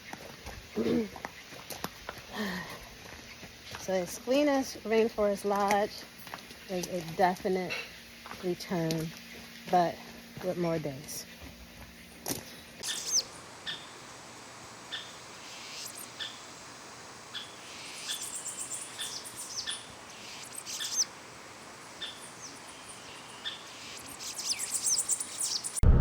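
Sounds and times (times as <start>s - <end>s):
bird chirps trills and whistles: 12.8s - 13.9s, 14.9s - 16.4s, 17.3s - 21.1s, 22.0s - 25.8s.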